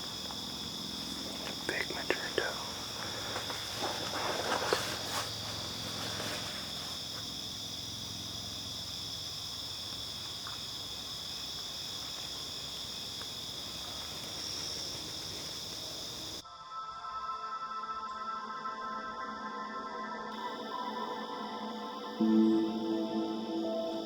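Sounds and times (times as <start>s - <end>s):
crickets chirping: 0.0s - 24.0s
faint ticks: 8.8s - 10.8s, 11.4s - 16.0s.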